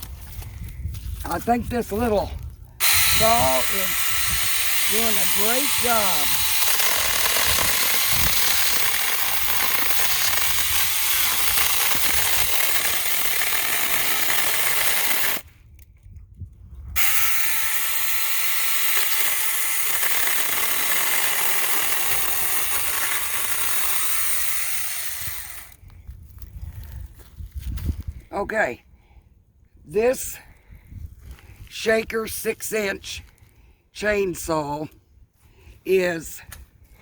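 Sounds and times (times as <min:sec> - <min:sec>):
electric chainsaw cutting branch: 0:02.8 - 0:15.5, 0:17.0 - 0:25.8.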